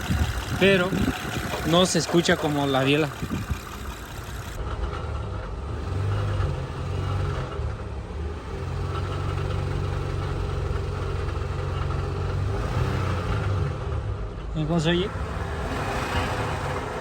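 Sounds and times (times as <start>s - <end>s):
car engine running: 0.0s - 5.9s.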